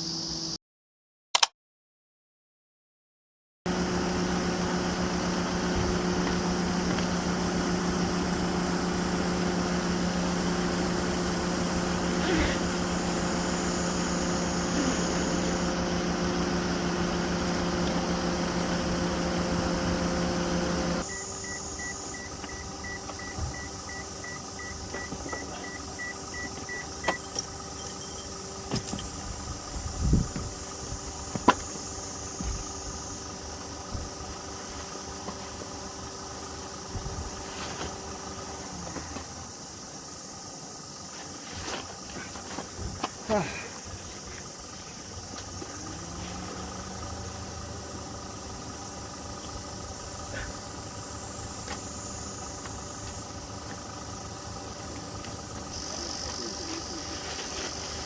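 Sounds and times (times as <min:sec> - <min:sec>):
steady mechanical hum: 0:03.7 - 0:58.0
short high beeps: 0:21.1 - 0:28.3.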